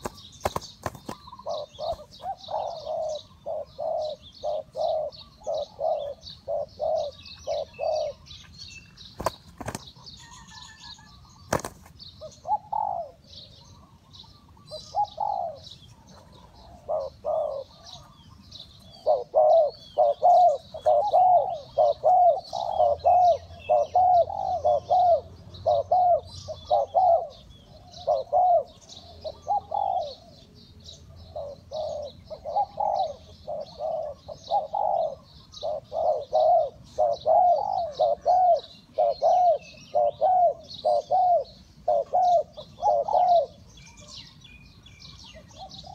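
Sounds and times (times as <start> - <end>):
dove cooing: 0.0 - 44.2, 45.2 - 45.9
small birds chirping: 0.0 - 45.9.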